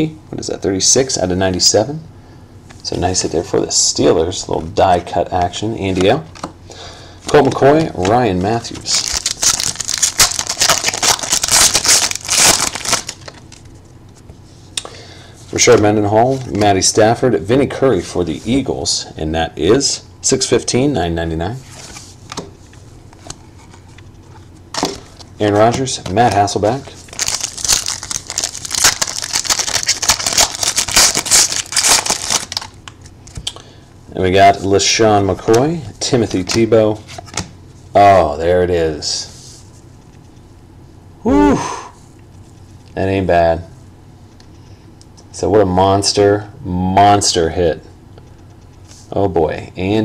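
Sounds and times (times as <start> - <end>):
foil wrapper crinkling and tearing: 8.7 - 13.8, 26.2 - 33.0.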